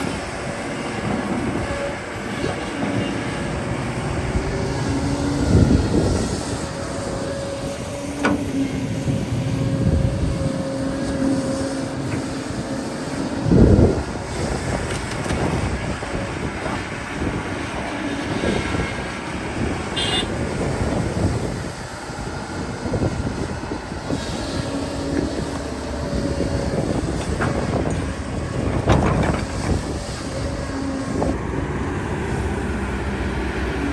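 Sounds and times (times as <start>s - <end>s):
excavator diesel engine drone: 0.0s - 33.9s
heavy thuds and clanks: 28.6s - 30.0s.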